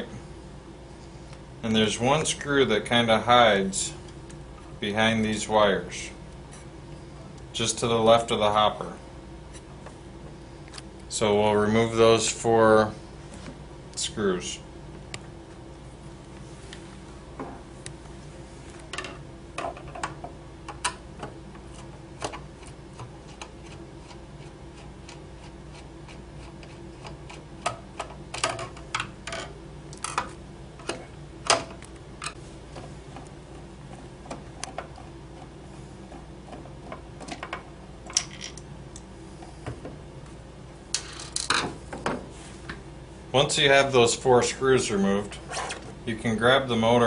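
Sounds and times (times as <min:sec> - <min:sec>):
steady low hum: 0:00.0 - 0:47.0.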